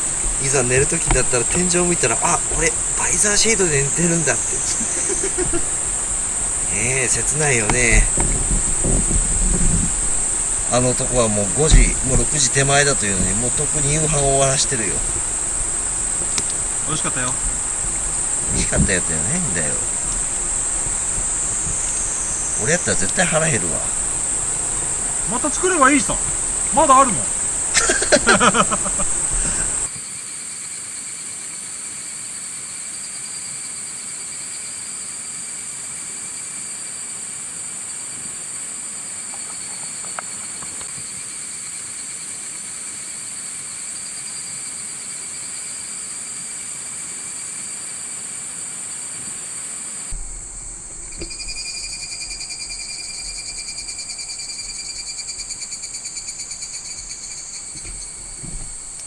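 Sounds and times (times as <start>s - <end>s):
insects trilling: 0.0s - 59.0s.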